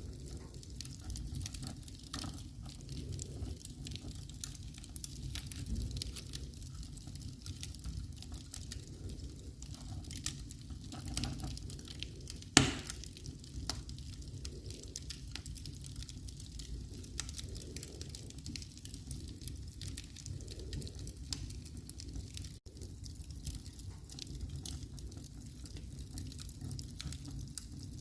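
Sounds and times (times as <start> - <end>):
wood fire crackling: 0.0 - 28.0
loud fire pop: 12.6 - 13.0.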